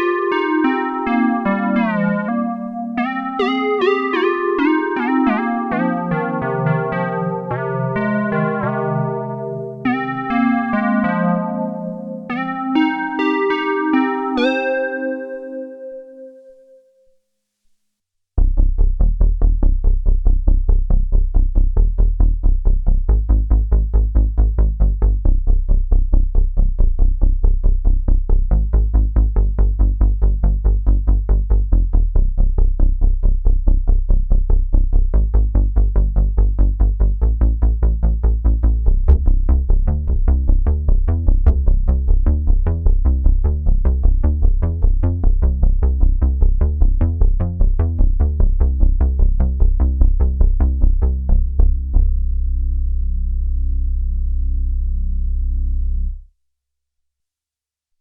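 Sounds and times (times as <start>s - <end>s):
pulsing synthesizer bass line: 0.0s - 16.2s, 26.8s - 56.1s.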